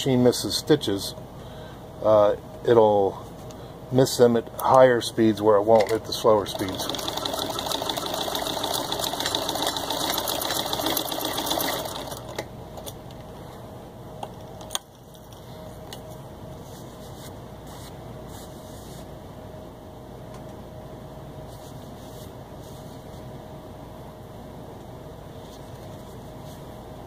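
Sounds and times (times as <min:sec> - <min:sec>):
low steady background hum: 0:00.0 - 0:27.0
sewing machine rattling: 0:06.4 - 0:12.4.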